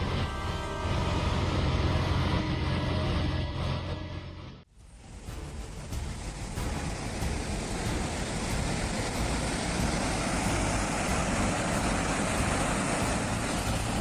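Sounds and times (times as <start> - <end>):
floodwater rushing: 4.8 - 14.0.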